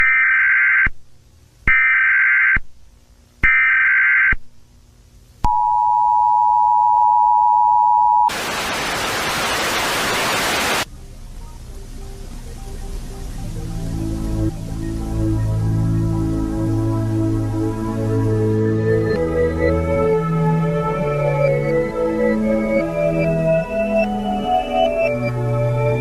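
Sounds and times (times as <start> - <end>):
data bursts: 8.2 - 10.9
static hiss: 8.3 - 19.2
faint music: 10.8 - 26.0.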